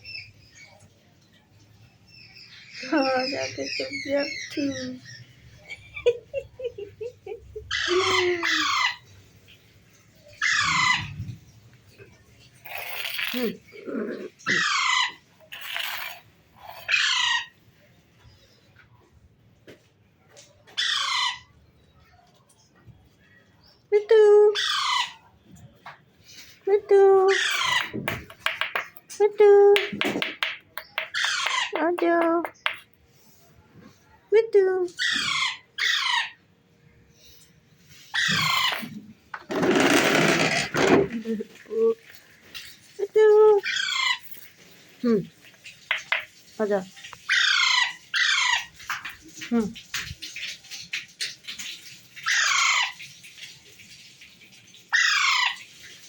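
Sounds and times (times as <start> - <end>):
parrot squawking: 7.6 - 9.0, 10.4 - 11.1, 12.7 - 17.6, 20.8 - 21.5, 24.6 - 25.2, 27.3 - 28.8, 30.8 - 32.8, 35.0 - 36.4, 38.1 - 39.0, 43.6 - 44.3, 47.3 - 48.7, 52.2 - 53.0, 54.9 - 55.6.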